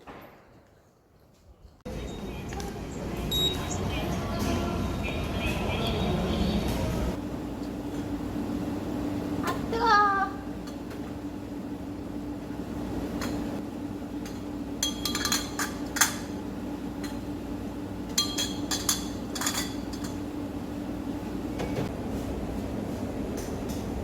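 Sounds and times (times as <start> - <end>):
steady low hum: 1.8 - 24.0
dishes and utensils clinking: 14.2 - 16.4, 18.1 - 20.2.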